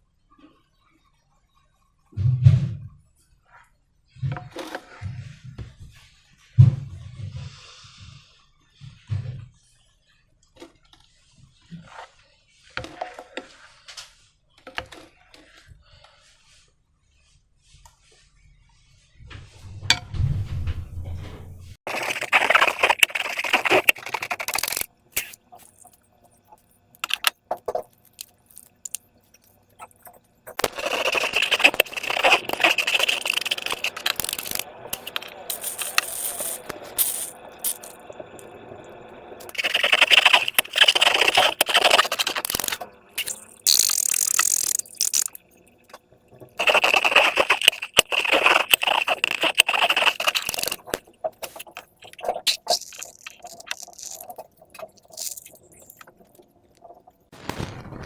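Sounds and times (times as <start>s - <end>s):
slime squelching and crackling: 21.8s - 38.1s, 39.4s - 45.5s, 46.6s - 58.0s.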